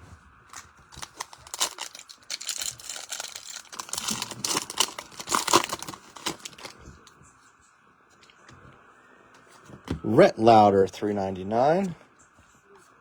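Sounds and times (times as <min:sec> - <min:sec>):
foil wrapper crinkling and tearing: 0:00.5 - 0:06.8.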